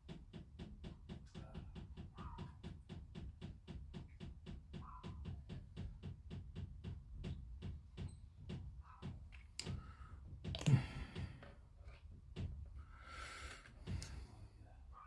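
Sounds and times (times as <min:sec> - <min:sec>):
plastic parts knocking and rustling: 0:06.5 - 0:12.8, 0:13.4 - 0:14.3.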